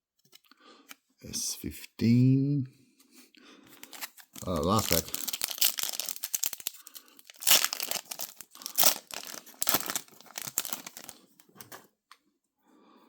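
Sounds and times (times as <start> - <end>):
card pack wrapper tearing and crinkling: 3.8 - 11.8.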